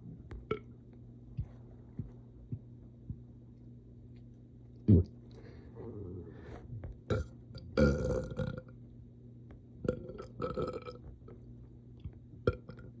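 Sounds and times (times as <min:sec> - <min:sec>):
person burping: 0:07.1 - 0:08.7, 0:09.8 - 0:11.0.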